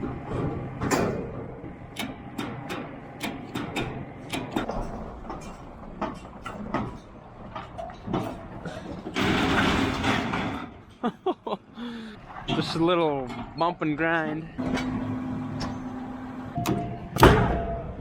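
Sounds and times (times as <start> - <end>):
metal shelter knocking and clanking: 0.0 - 11.0, 16.6 - 18.0.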